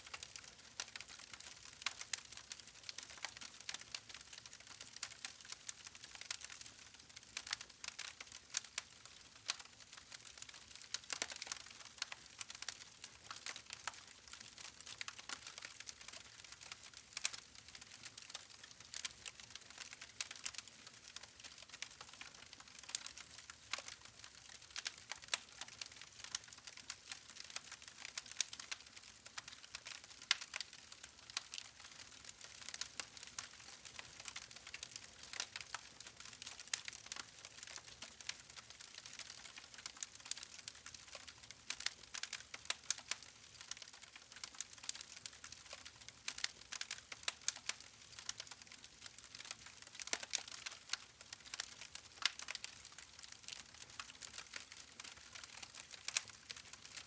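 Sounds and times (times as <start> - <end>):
campfire crackling and popping: 0.1 - 57.0.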